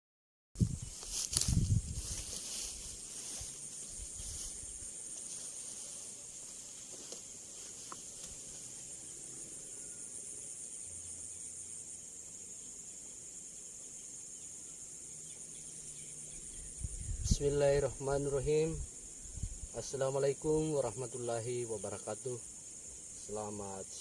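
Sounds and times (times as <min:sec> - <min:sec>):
insects chorus: 0:00.6 - 0:24.0.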